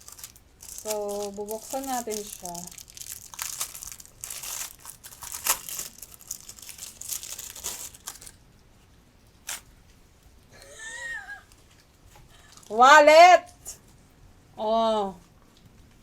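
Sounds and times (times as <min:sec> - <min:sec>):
packaging crinkling and tearing: 0:00.0 - 0:08.4, 0:09.4 - 0:09.7.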